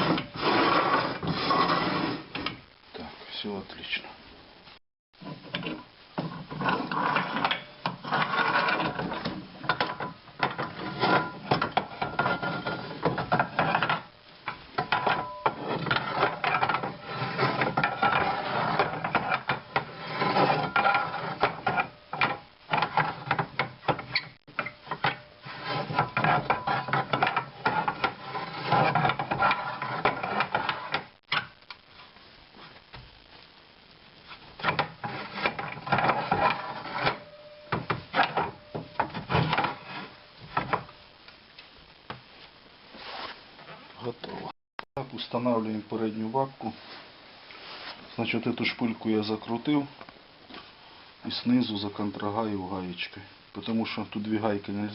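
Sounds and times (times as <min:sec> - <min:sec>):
metal parts scraping and clicking: 0:05.2 - 0:31.6, 0:34.6 - 0:40.8.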